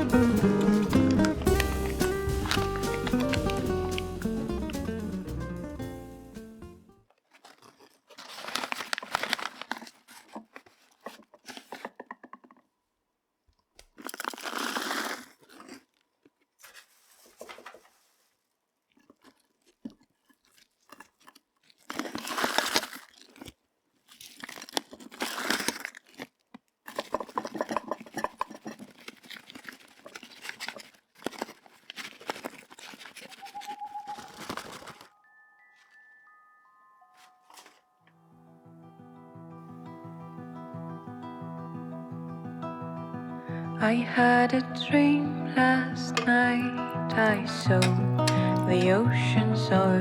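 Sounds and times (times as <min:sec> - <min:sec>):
crunching and rustling by hand: 0:00.0 - 0:06.4, 0:07.0 - 0:12.6, 0:13.6 - 0:35.2, 0:37.2 - 0:37.9.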